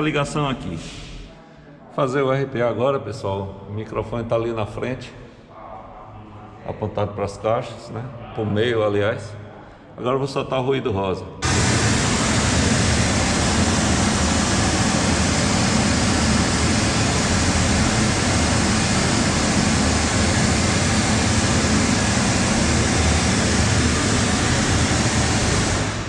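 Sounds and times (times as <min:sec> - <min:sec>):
pink noise through loudspeakers: 0:11.4 - 0:26.0.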